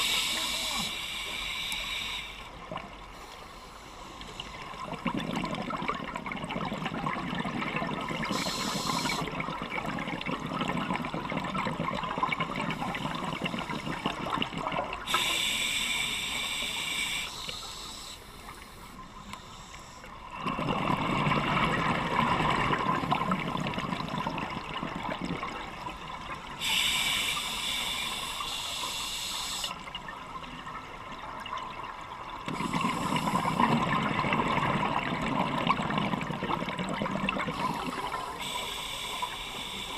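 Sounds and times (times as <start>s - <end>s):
water rushing and bubbling: 4.2s - 15.4s, 20.1s - 29.0s, 29.7s - 39.4s
sharp hiss: 8.3s - 9.2s, 26.6s - 29.7s.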